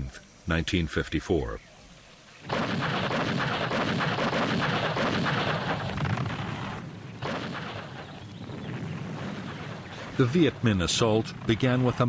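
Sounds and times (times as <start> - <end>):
artillery gunfire and explosions: 2.4 - 12.0.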